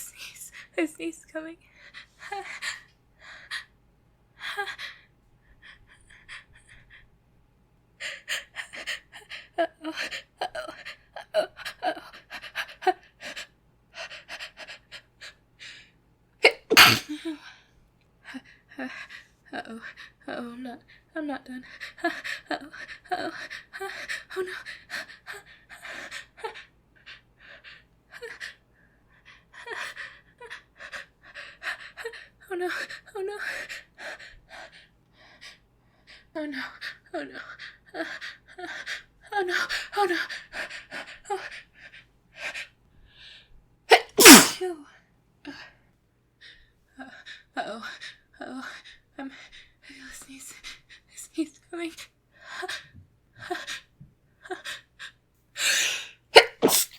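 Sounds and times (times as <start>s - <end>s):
breathy catches before a sneeze: 16.5s - 17.2s, 43.9s - 44.6s, 55.7s - 56.9s.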